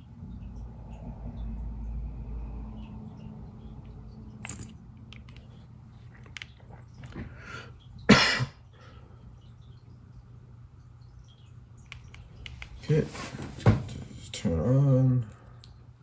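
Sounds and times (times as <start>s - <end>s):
person coughing: 8.1s - 8.6s.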